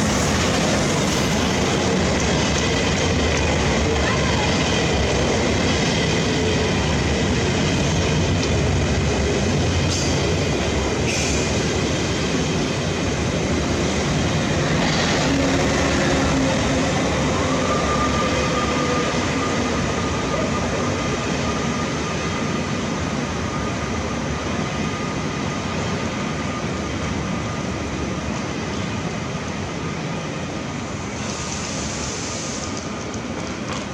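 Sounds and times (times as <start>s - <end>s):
train wheels rumbling on rail: 0.0s - 33.9s
train motor whine: 13.7s - 20.2s.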